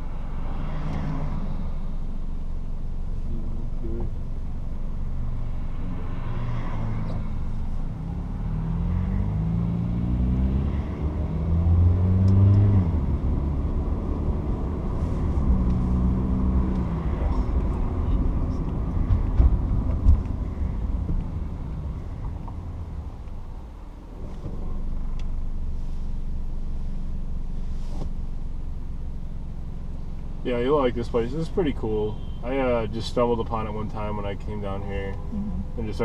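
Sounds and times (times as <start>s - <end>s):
low traffic rumble: 0.0s - 36.0s
vehicle engine accelerating: 3.3s - 28.1s.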